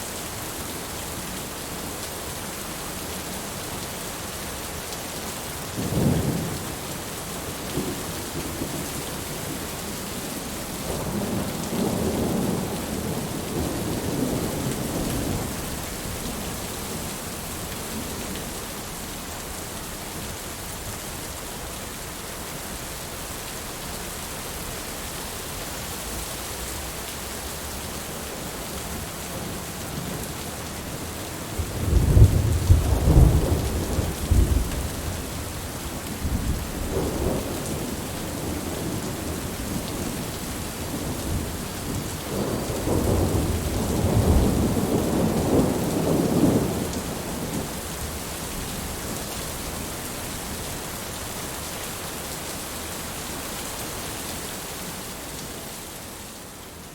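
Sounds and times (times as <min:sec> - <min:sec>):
steady rain: 0:00.0 - 0:56.9
rolling thunder: 0:31.6 - 0:35.5, 0:36.2 - 0:47.8.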